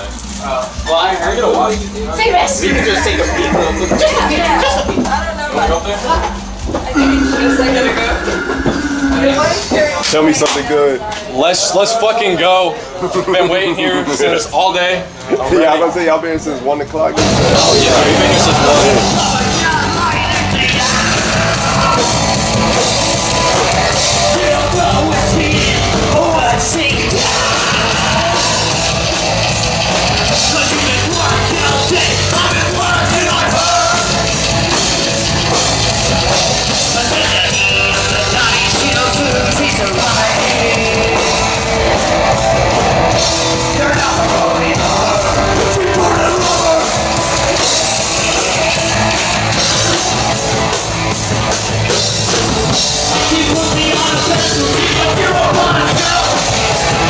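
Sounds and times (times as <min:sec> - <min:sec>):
live punk metal band: 0:00.0 - 0:11.4, 0:17.1 - 0:57.0
person yelling singing: 0:17.2 - 0:50.8, 0:52.7 - 0:57.0.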